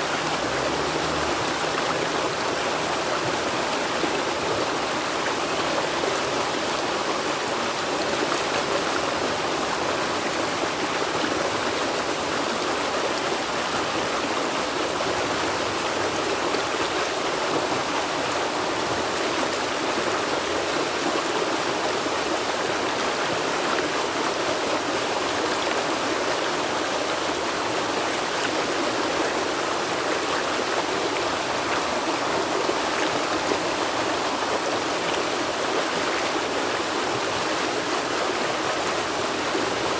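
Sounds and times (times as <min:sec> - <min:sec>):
river water rushing over rocks: 0:00.0 - 0:39.9.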